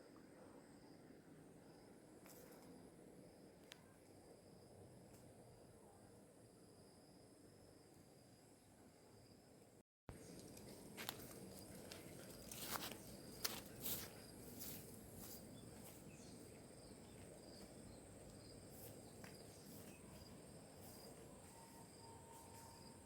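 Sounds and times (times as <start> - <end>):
rustles and knocks of footsteps: 10.2 - 22.9
insect chorus buzzing: 10.2 - 23.0.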